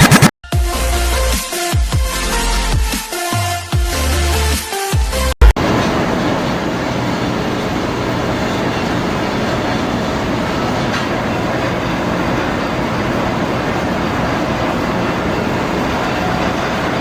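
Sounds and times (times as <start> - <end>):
machine tool running: 5.6 - 17.0.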